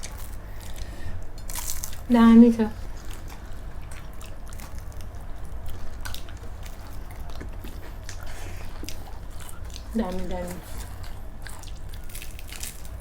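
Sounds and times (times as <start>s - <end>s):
low steady hum: 0.0s - 13.0s
people chewing food: 0.0s - 13.0s.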